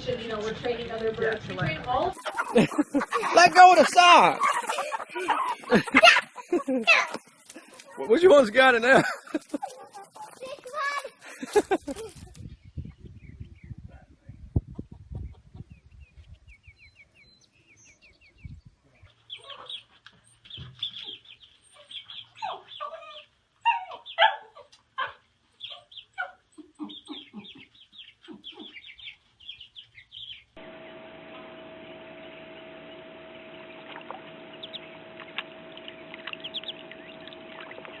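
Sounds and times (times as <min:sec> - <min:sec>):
steady hum: 0:30.6 - 0:38.0.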